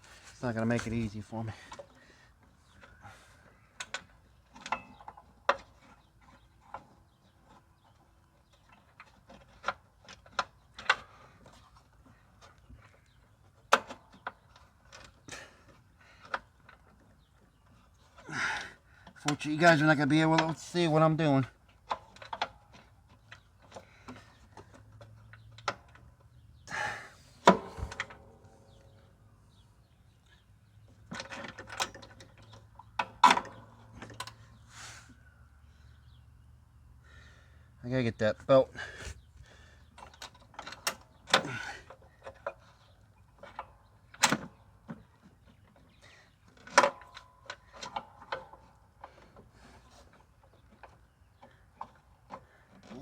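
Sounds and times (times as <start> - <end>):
tools clicking and knocking: 3.8 - 6.0, 27.4 - 28.8, 31.0 - 34.6
metal clicks and knocks: 3.8 - 7.6, 21.6 - 26.3, 27.4 - 29.1, 30.9 - 34.5, 40.0 - 45.3, 46.5 - 49.5.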